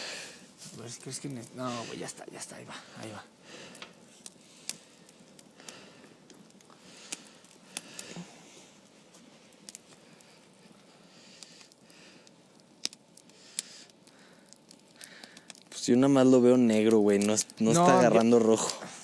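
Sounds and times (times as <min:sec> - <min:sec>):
campfire pops and crackles: 0:00.0 - 0:19.0
soft fire hiss: 0:00.0 - 0:19.0.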